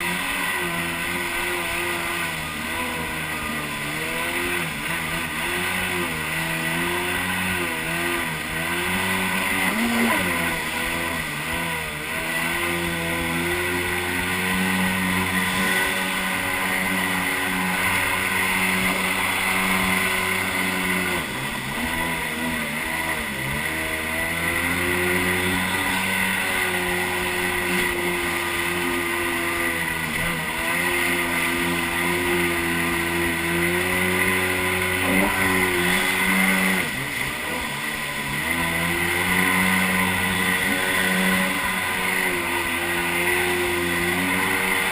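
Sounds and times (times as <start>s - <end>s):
jet ski engine running: 0.0s - 44.9s.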